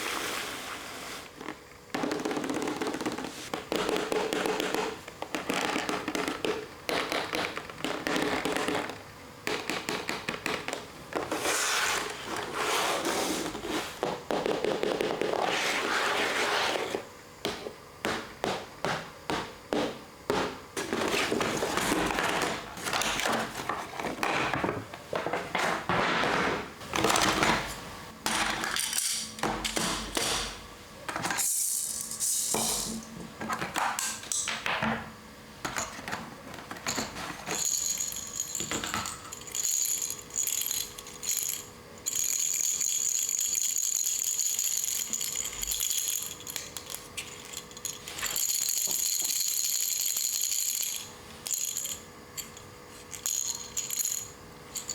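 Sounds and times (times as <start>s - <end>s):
plastic parts clattering: 31.1s - 34.6s, 35.6s - 54.9s.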